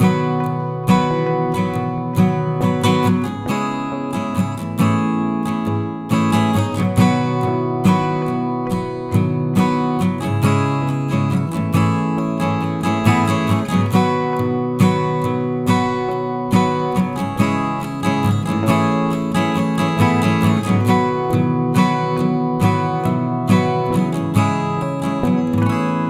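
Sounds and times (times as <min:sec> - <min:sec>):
strummed acoustic guitar: 0:00.0 - 0:26.0.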